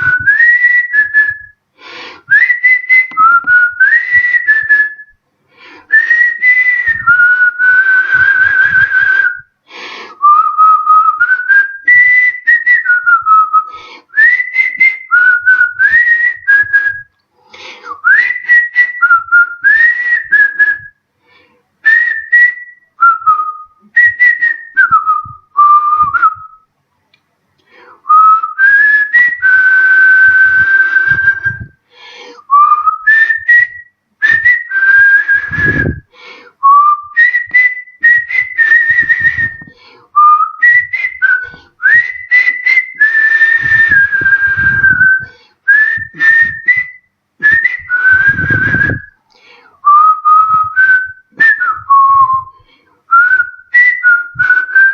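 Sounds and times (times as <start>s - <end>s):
man whistling a melody: 0.0s - 17.2s, 17.8s - 21.0s, 21.8s - 26.7s, 28.0s - 54.9s
breath hiss: 1.7s - 2.3s, 5.5s - 5.9s, 9.6s - 10.2s, 17.3s - 18.0s, 31.8s - 32.5s, 36.0s - 36.6s, 49.3s - 49.8s.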